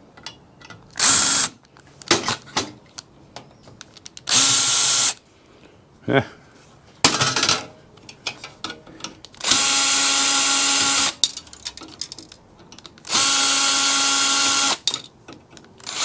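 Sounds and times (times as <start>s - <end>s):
power drill-driver running: 4.3s - 5.2s, 9.4s - 11.2s, 13.1s - 14.8s.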